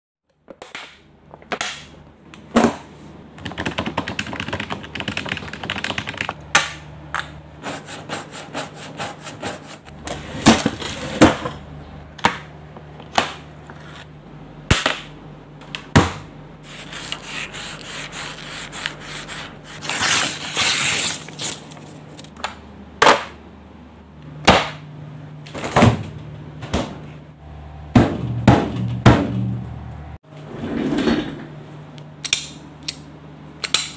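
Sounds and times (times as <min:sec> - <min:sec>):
steady low hum: 0:01.0 - 0:33.9.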